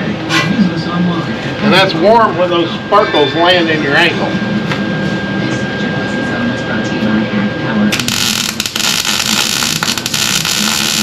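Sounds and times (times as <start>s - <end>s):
steady hum: 0.0s - 11.0s
welding arc crackling: 7.9s - 11.0s.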